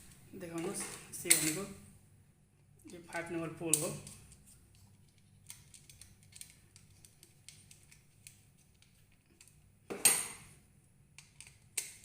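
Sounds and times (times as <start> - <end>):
low steady hum: 0.0 - 12.0
small clicks and scrapes of cable: 4.0 - 9.6.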